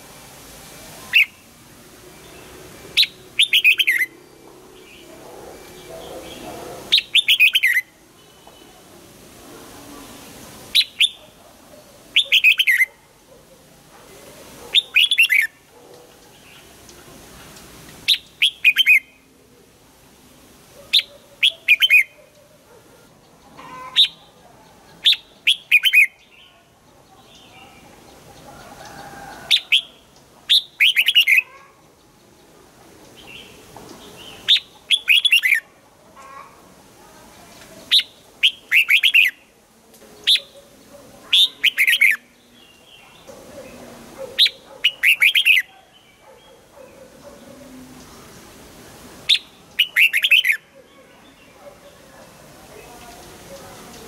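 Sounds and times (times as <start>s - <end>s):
bird singing: 2.2s - 8.8s, 12.2s - 12.9s, 23.2s - 35.6s, 40.1s - 48.2s.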